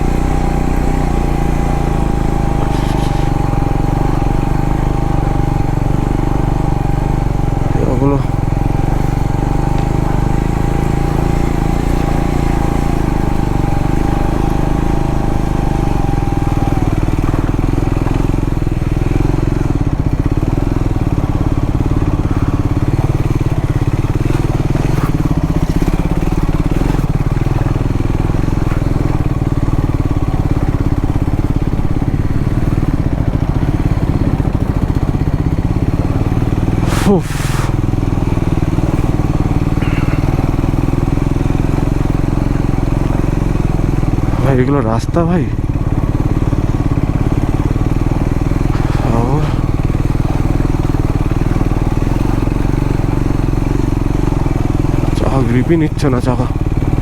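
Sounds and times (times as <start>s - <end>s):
thin steady whine: 0.0s - 32.4s, 46.4s - 54.4s
motorcycle engine droning: 0.0s - 57.0s.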